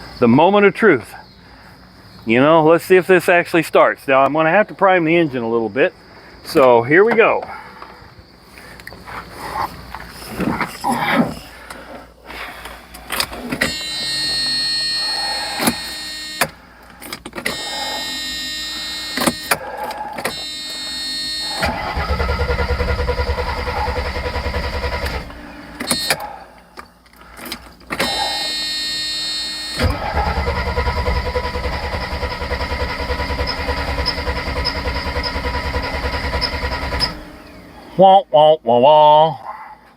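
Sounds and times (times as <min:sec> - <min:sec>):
starter motor cranking: 0:12.9 - 0:26.4, 0:27.1 - 0:37.9
car engine running: 0:20.4 - 0:26.2, 0:29.8 - 0:37.9.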